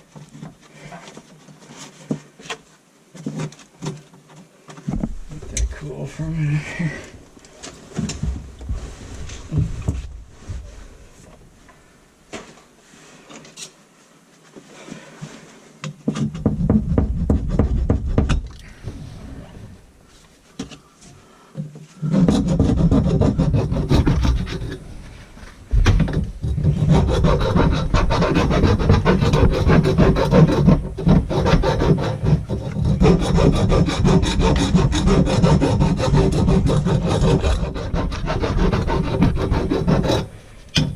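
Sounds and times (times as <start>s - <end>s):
abrasive scraping on pipe: 21.8s - 25.5s, 26.2s - 40.9s.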